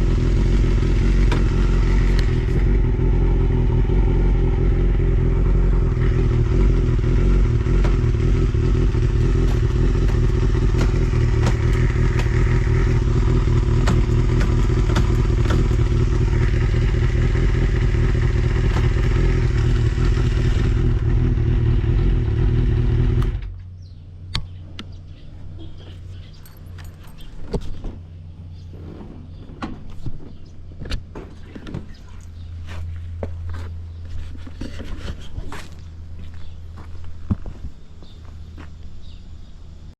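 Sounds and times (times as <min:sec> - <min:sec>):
motorcycle engine idling: 0:00.0 - 0:28.7.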